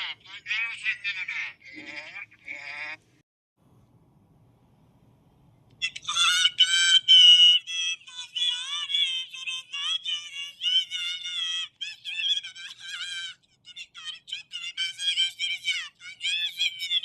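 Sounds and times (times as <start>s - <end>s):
high-pitched chipmunk-like voice: 5.8s - 17.0s.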